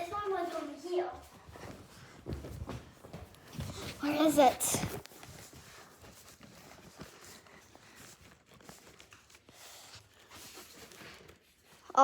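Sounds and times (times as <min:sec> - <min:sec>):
faint taps and rustles: 0:00.0 - 0:11.8.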